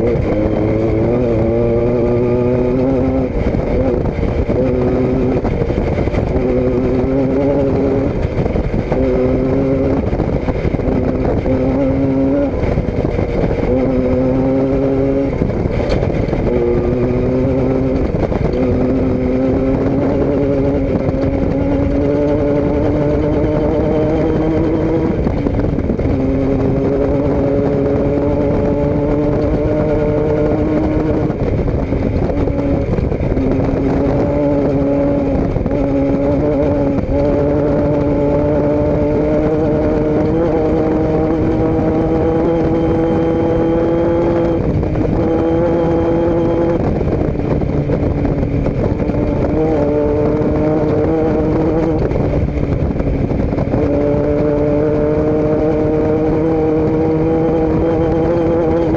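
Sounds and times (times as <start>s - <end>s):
vehicle engine running: 0.0s - 58.9s.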